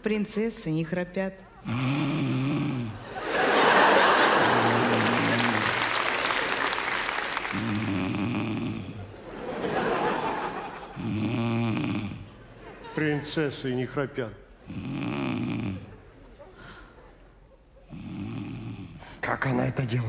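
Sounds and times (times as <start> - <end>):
loud snoring: 1.6 - 3.1, 4.3 - 6.0, 7.4 - 9.2, 10.4 - 12.4, 14.6 - 16.0, 17.8 - 19.2.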